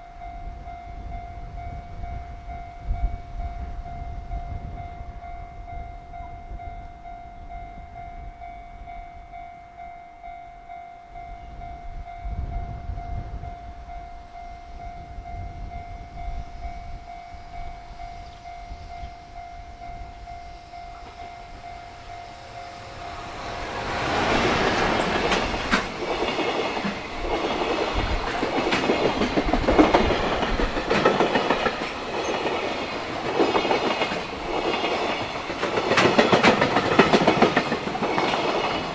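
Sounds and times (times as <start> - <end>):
freight train passing: 0.0 - 38.9
level-crossing warning bell: 0.0 - 38.9
wind rumbling on microphone: 0.2 - 9.4, 11.2 - 38.9
train wheels clacking: 20.2 - 38.9.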